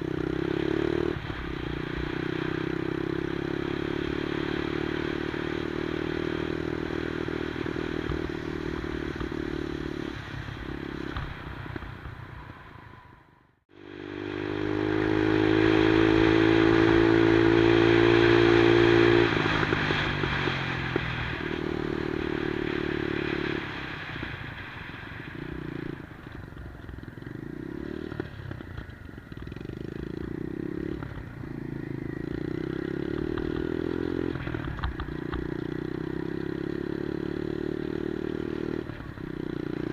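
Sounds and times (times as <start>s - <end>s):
minibike engine revving: 0.0s - 11.2s, 13.7s - 24.3s, 27.1s - 39.9s.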